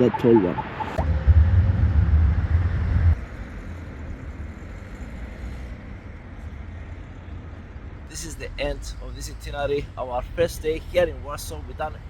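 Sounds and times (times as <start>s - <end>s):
background city hum: 0.0s - 12.0s
heavy low rumble: 0.4s - 4.3s.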